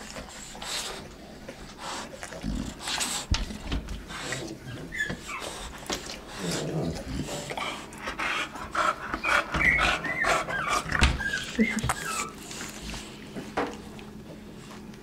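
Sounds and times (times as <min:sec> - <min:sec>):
dog snoring and snuffling: 0:02.0 - 0:08.0
dog whimpering: 0:04.3 - 0:05.6, 0:08.8 - 0:12.6.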